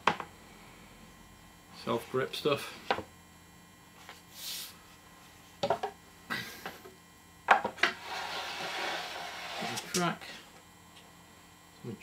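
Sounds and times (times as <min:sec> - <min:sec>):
wood scraping on bench: 0:07.8 - 0:10.0
scraping slide: 0:07.9 - 0:10.0.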